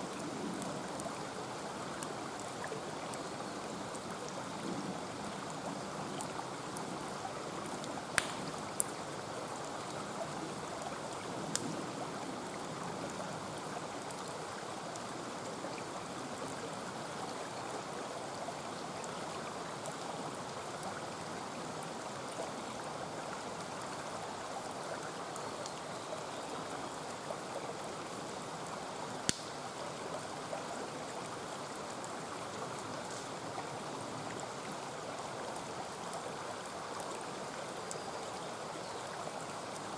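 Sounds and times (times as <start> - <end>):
campfire wood popping: 8.1 - 9.0, 29.2 - 29.6.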